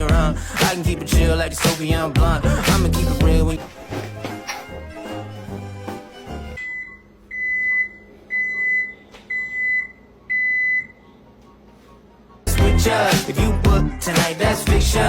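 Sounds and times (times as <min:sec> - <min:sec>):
hip-hop music: 0:00.0 - 0:06.6, 0:12.5 - 0:15.0.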